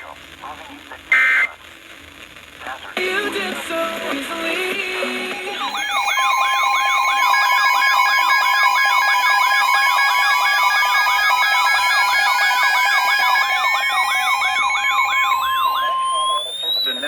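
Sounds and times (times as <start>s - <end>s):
steady alert tones: 5.3s - 17.0s
siren-like warble: 5.6s - 17.0s.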